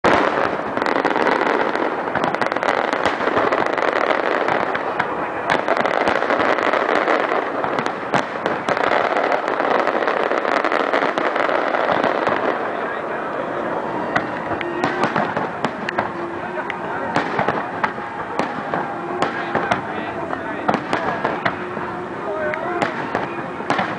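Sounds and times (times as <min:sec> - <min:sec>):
fireworks crackling: 0:00.0 - 0:23.9
loud firework bangs: 0:00.0 - 0:23.9.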